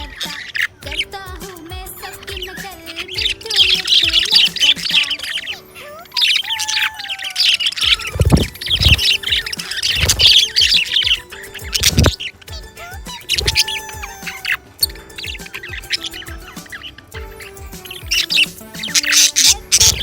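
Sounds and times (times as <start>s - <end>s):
budgies chattering and chirping: 0.0s - 20.0s
low thuds: 7.9s - 14.2s.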